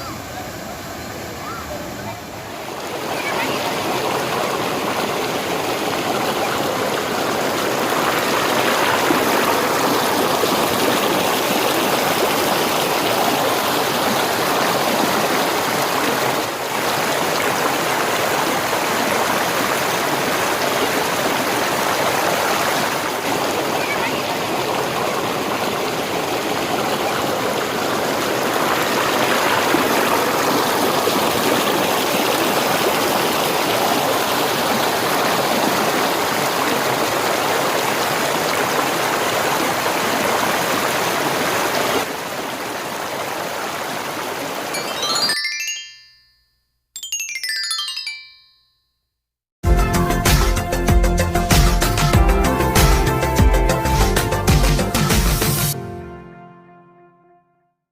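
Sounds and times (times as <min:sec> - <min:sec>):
waterfall rushing: 0:00.0 - 0:45.9.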